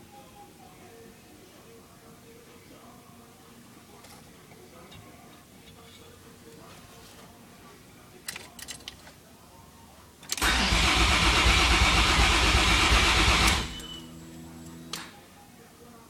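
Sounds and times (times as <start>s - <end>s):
starter motor cranking engine: 10.3s - 14.0s.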